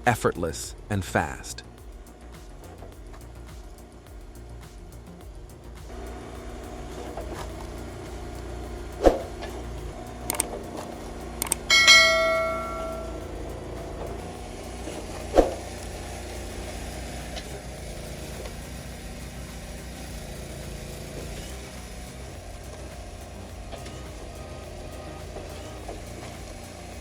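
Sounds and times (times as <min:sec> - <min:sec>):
ringing metallic clang: 0:11.7 - 0:13.3.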